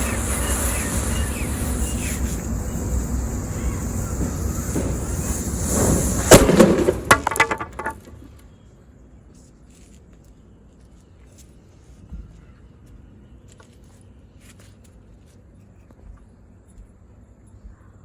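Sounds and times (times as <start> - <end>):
steady hiss: 0.0 - 7.1
firecracker bang: 0.0 - 8.2.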